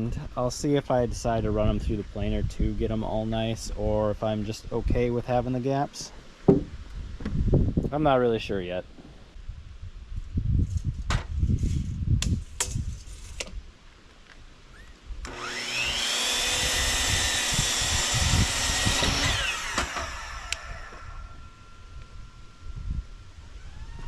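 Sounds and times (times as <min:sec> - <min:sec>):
wooden knocks: 0:06.4 - 0:07.4
power saw cutting wood: 0:15.2 - 0:21.4.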